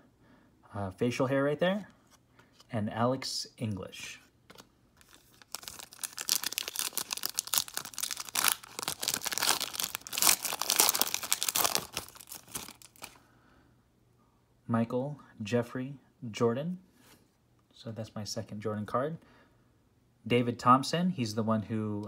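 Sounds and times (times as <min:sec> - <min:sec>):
wrapper being torn and crinkled: 0:05.0 - 0:13.2.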